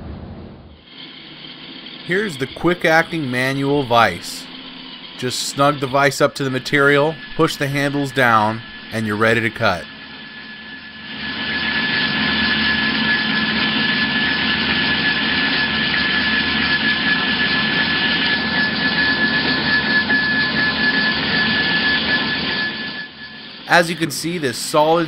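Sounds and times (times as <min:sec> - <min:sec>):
bandsaw cutting metal: 0:01.0 - 0:09.9.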